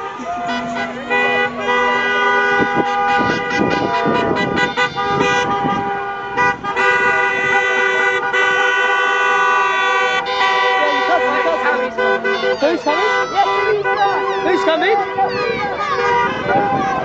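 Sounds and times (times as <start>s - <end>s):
people shouting: 0.0s - 6.2s, 6.8s - 17.0s
car horns honking: 0.0s - 17.0s.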